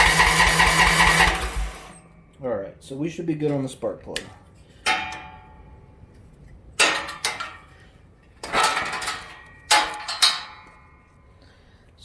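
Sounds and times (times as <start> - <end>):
metal clanking on metal: 8.4 - 10.8.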